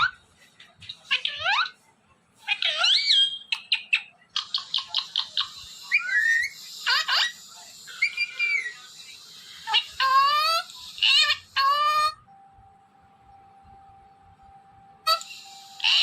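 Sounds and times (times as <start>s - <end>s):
parrot whistling and chattering: 2.4s - 12.2s, 15.0s - 16.0s.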